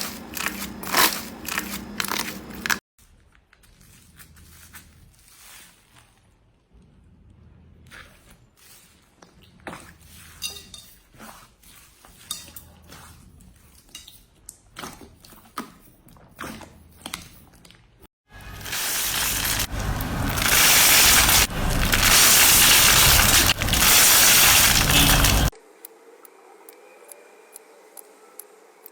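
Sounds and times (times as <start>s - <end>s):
slime crackling hiss: 18.4s - 25.5s.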